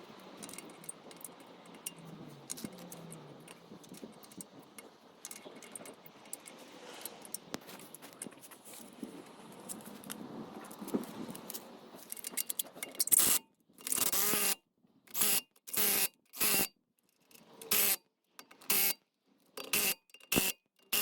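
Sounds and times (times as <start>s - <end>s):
wheel bolts clinking and scraping: 0.0s - 14.5s
power tool bursts: 14.0s - 16.7s.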